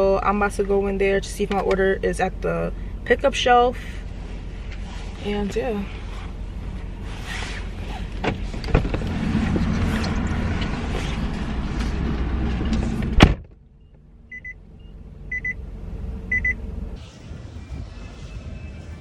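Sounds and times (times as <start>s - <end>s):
outside noise and clicks: 1.4s - 2.0s, 8.0s - 14.1s
car door slamming shut: 13.0s - 13.6s
short electronic beeps: 13.8s - 15.6s, 16.3s - 16.6s.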